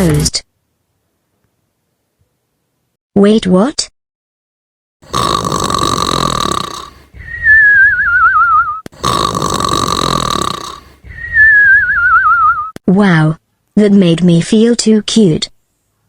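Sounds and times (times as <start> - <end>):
cartoon snoring: 5.0 - 7.5, 8.8 - 11.5
wavering whistle: 7.2 - 8.9, 11.1 - 12.8.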